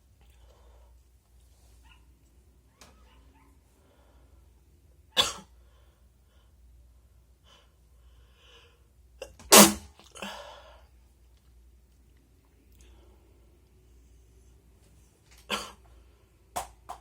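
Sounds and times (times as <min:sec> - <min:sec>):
faint breaths: 0:00.2 - 0:02.1, 0:03.0 - 0:04.8
person sneezing: 0:09.3 - 0:10.5.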